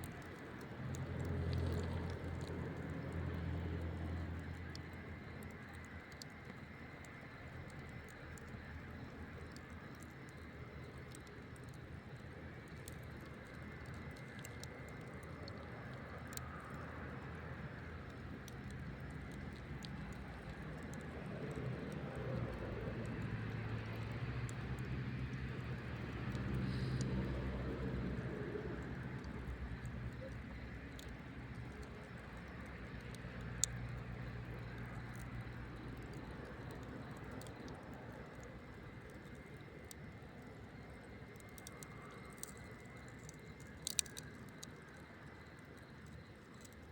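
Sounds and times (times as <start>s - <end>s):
campfire crackling: 0.0s - 46.9s.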